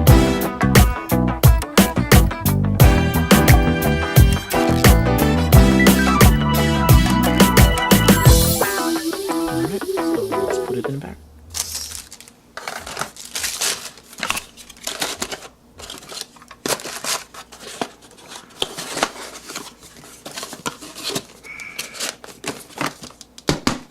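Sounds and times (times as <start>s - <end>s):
music: 0.0s - 11.0s.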